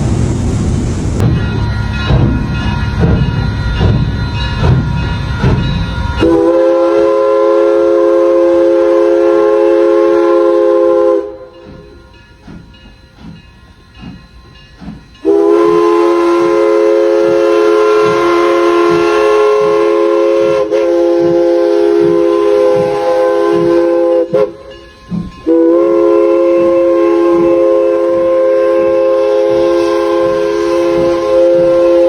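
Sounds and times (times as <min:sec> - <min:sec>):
steam locomotive exhaust chuffing: 0:00.0 - 0:32.0.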